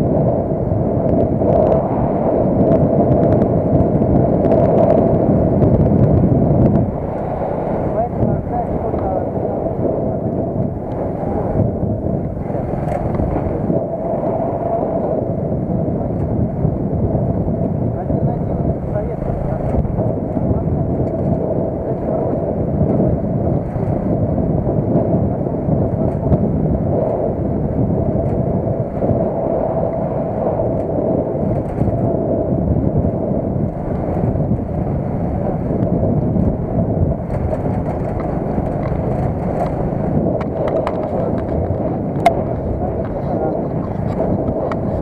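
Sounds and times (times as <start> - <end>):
vehicle engine and road noise: 4.5 - 14.0, 17.9 - 24.2, 33.6 - 45.0.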